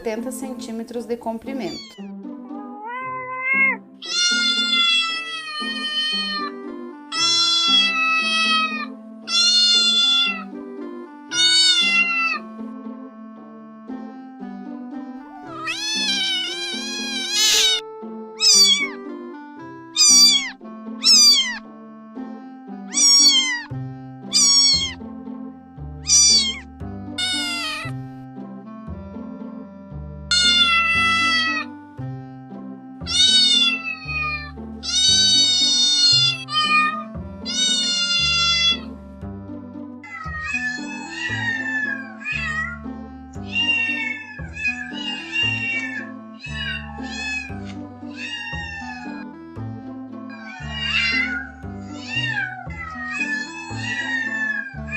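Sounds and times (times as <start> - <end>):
background music: 0.0 - 54.9
cat meowing: 1.6 - 10.5, 11.3 - 12.4, 15.3 - 17.8, 18.4 - 19.0, 20.0 - 21.6, 22.9 - 23.7, 24.3 - 25.0, 26.0 - 27.9, 30.3 - 31.7, 33.1 - 38.9, 40.0 - 49.3, 50.3 - 54.9.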